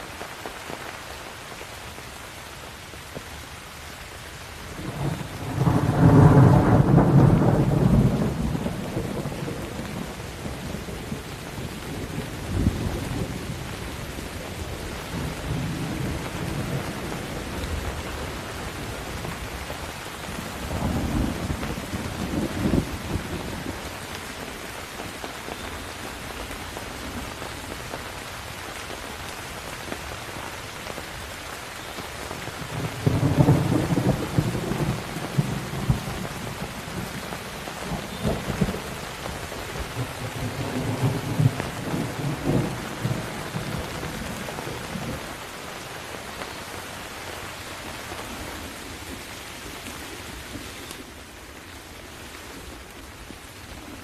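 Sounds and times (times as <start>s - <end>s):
steady rain: 0.0s - 54.0s
rolling thunder: 4.8s - 13.7s, 20.3s - 23.8s, 32.6s - 45.3s.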